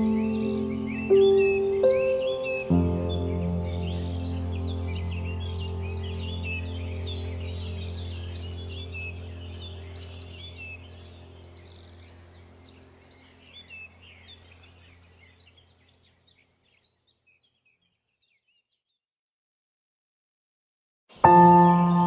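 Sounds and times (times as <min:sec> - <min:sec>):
low steady drone: 0:00.0 - 0:15.8
songbirds chirping: 0:00.0 - 0:19.0, 0:21.1 - 0:22.0.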